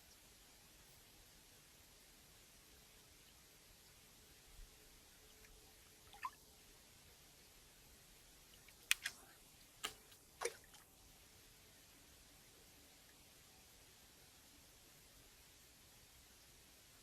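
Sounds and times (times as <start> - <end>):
water drips: 5.3 - 6.4, 8.4 - 11.0.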